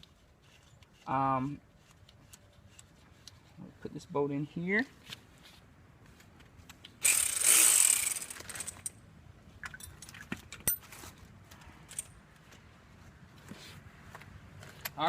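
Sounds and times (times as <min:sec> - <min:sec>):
power tool driving bolt: 0:07.0 - 0:08.9.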